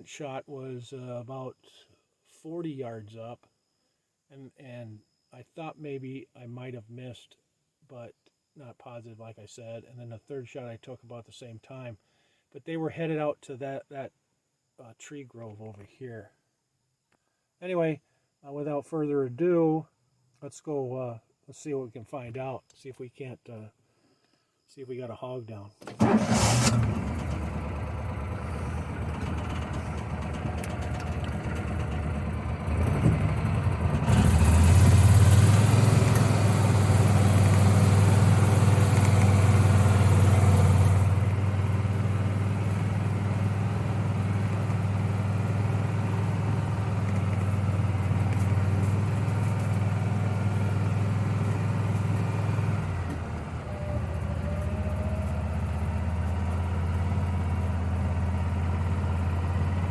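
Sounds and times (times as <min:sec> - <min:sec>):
vehicle engine idling and revving: 0:26.0 - 0:59.9.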